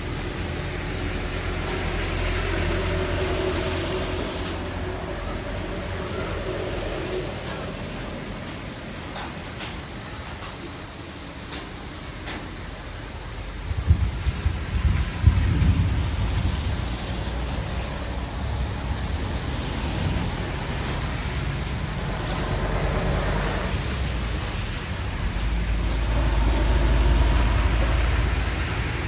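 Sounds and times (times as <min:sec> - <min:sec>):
steady rain hiss: 0:00.0 - 0:29.0
deep low rumble: 0:13.7 - 0:17.6.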